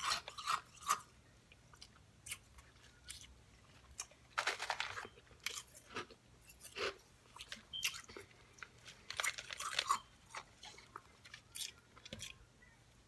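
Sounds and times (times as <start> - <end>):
person chewing crunchy food: 1.7 - 12.4.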